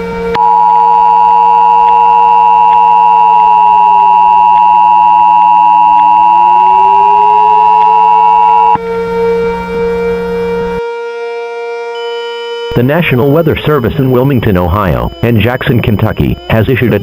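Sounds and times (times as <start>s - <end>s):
two-tone alert signal: 0.4s - 8.8s, 12.7s - 17.0s
steady low hum: 12.7s - 17.0s.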